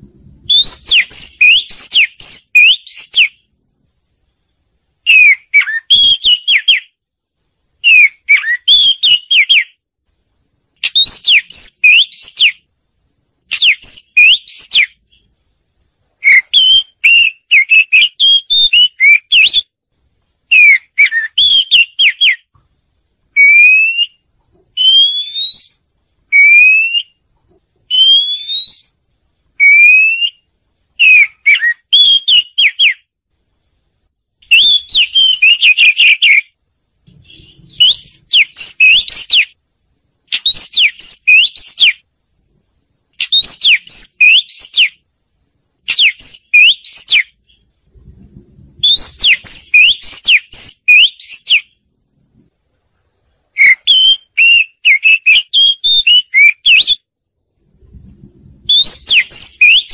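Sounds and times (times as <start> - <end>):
bird whistling song: 0.3 - 3.6, 5.0 - 7.0, 7.8 - 9.8, 10.8 - 12.7, 13.5 - 15.3, 16.2 - 19.7, 20.5 - 22.6, 23.3 - 27.2, 27.9 - 29.0, 29.6 - 33.1, 34.4 - 39.6, 40.3 - 42.0, 43.2 - 45.0, 45.8 - 47.7, 48.8 - 51.8, 53.6 - 57.1, 58.6 - 59.9.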